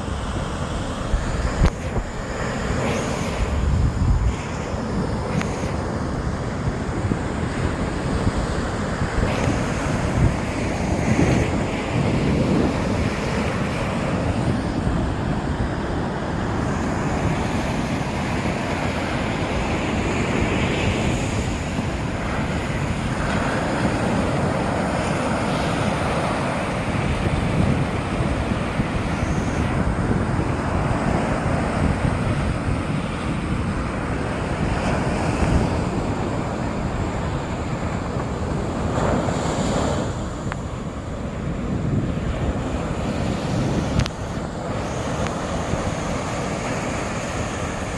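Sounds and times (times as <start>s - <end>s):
waves breaking on beach: 0.0s - 47.9s
wind rumbling on microphone: 0.0s - 47.9s.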